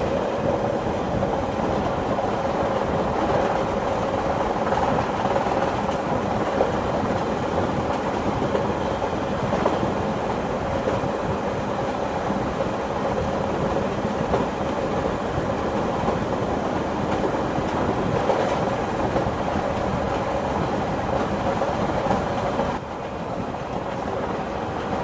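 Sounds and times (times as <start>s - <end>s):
train rumbling on rails: 0.0s - 25.0s
train wheels knocking: 12.2s - 25.0s.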